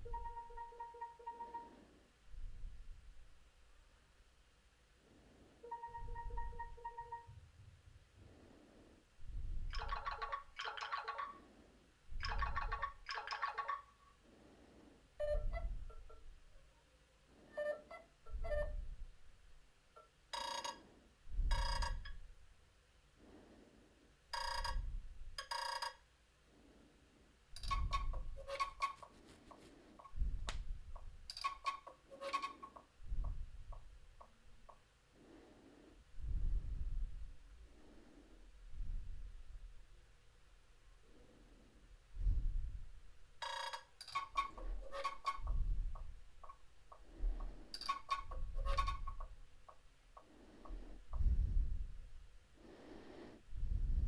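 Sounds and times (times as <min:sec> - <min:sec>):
electronic ringtones: 0:00.0 - 0:01.8, 0:05.7 - 0:07.4.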